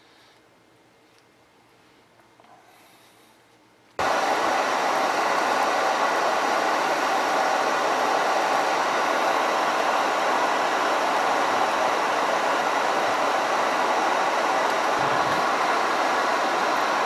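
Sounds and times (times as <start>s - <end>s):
steady rushing hiss: 4.0s - 17.0s.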